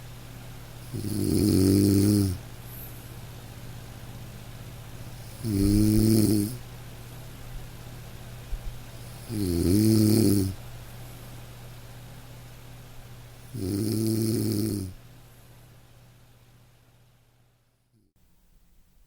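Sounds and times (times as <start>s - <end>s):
faint low hum: 0.0s - 19.0s
person snoring: 0.9s - 2.4s, 5.2s - 6.6s, 9.0s - 10.6s, 13.5s - 15.0s.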